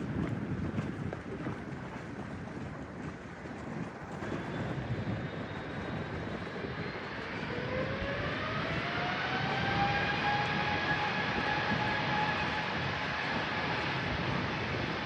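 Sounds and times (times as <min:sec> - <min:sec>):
jet engine rumble: 0:00.0 - 0:15.0
jet engine whine: 0:04.1 - 0:15.0.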